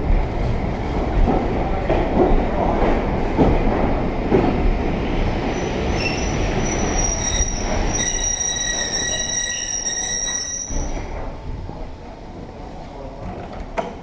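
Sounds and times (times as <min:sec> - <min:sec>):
train rumbling on rails: 0:00.0 - 0:14.0
wheels squealing: 0:05.5 - 0:11.0.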